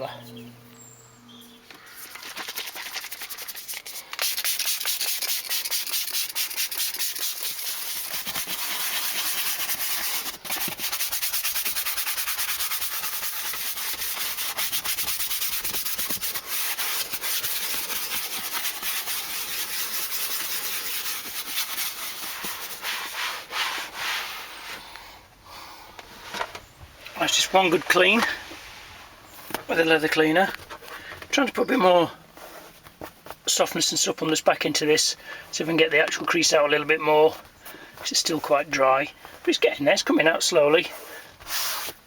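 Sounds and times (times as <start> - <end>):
scratchy rubbing on leather seat: 1.8 - 24.8, 41.4 - 42.0.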